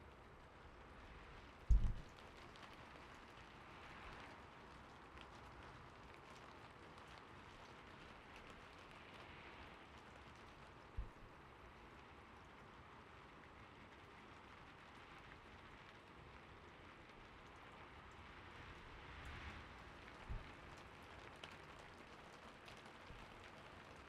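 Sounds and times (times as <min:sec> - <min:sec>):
faint steady rain: 0:00.0 - 0:24.0
low thump: 0:01.7 - 0:02.1.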